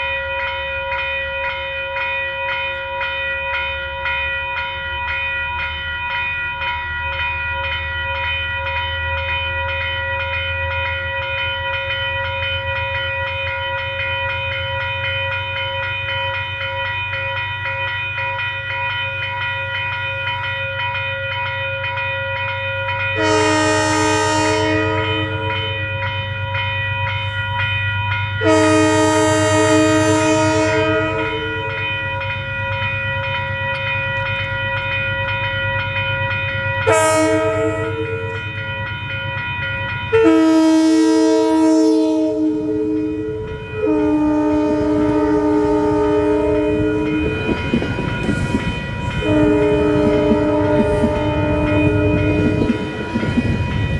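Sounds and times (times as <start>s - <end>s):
diesel train engine rumble: 0.0s - 53.9s
train horn blasts: 23.2s - 25.9s, 28.4s - 31.9s, 36.8s - 38.6s, 40.1s - 48.0s, 49.0s - 53.2s.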